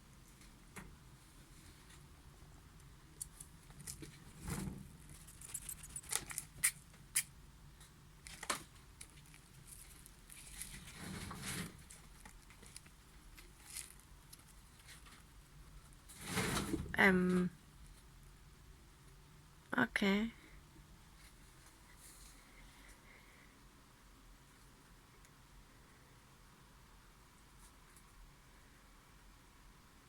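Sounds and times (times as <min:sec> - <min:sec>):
rat rustling and scraping: 0:00.0 - 0:17.0, 0:21.1 - 0:23.2.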